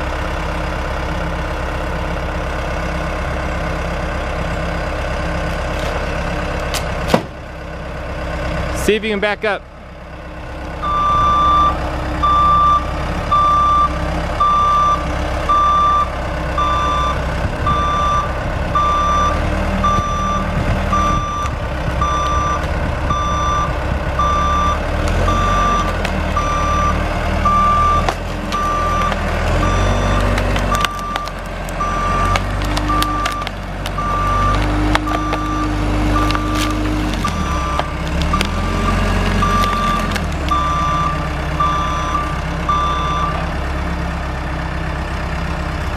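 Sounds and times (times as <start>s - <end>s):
backup alarm beeping: 10.8s - 43.4s
machine engine: 17.5s - 45.9s.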